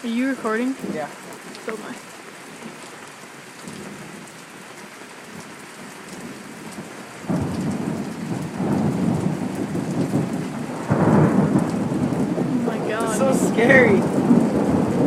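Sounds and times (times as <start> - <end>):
steady rain falling: 0.0 - 15.0
thunder rumbling: 7.2 - 15.0.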